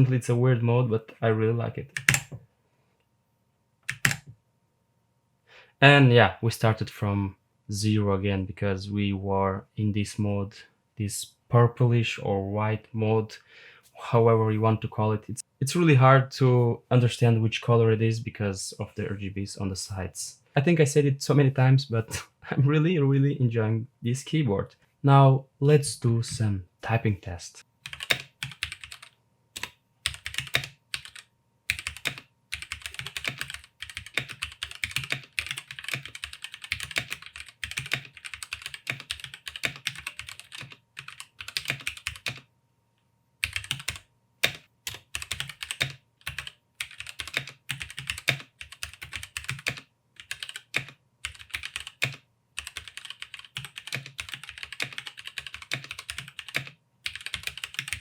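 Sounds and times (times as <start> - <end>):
mechanical keyboard typing: 1.9 - 2.4, 3.9 - 4.3, 27.9 - 42.4, 43.4 - 58.0.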